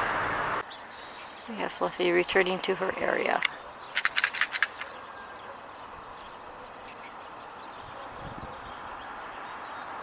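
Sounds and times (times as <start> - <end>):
distant traffic hum: 0.0 - 10.0.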